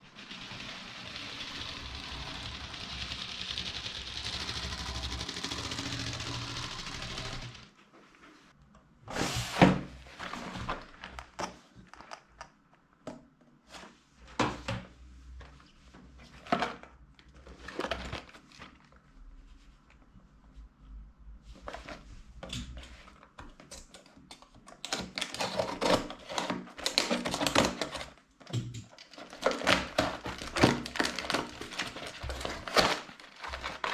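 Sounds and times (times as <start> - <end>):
plastic bags rustling: 29.1 - 33.9
cardboard box opened: 29.2 - 33.9.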